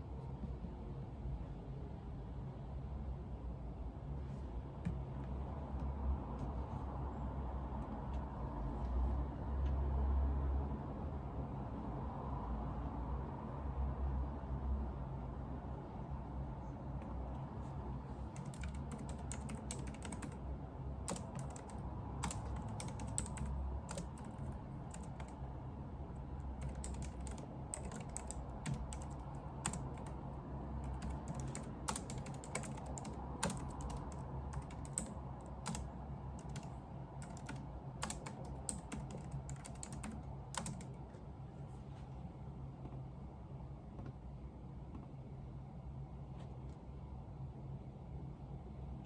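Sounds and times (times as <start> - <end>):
steady low hum: 0.0 - 49.0
computer keyboard typing: 18.3 - 20.4, 21.0 - 25.4, 26.4 - 41.0.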